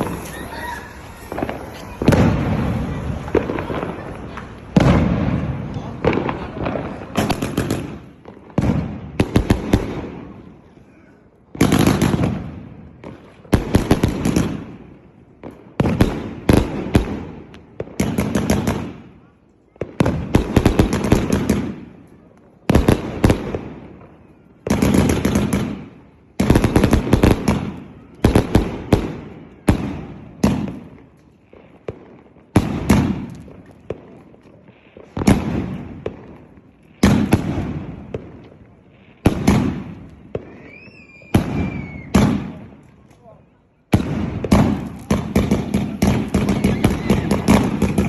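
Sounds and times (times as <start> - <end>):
firework cake bangs: 0.0 - 10.4, 39.2 - 42.9, 43.9 - 48.0.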